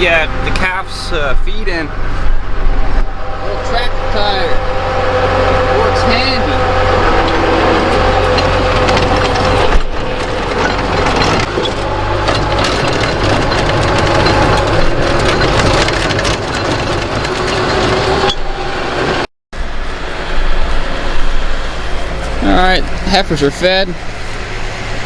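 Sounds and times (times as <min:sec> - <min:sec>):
tractor engine running: 0:00.0 - 0:25.0
mechanical clatter: 0:06.9 - 0:18.5.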